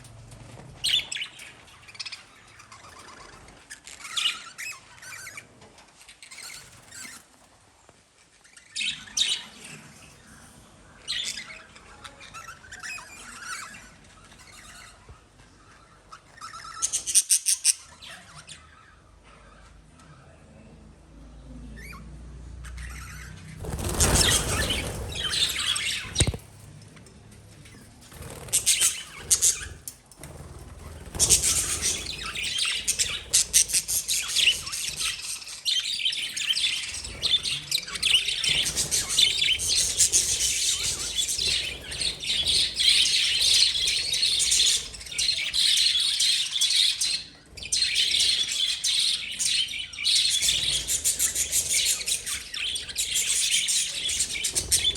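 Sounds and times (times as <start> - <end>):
lovebirds chirping and chattering: 0.0 - 54.9.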